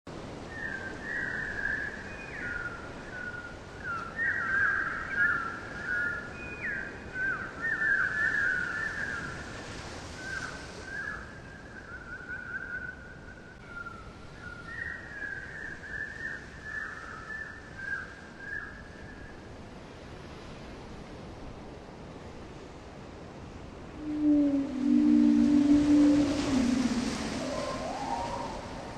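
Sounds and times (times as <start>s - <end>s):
steady hiss: 23.7s - 28.9s
warbling trilling whistles: 24.0s - 28.9s.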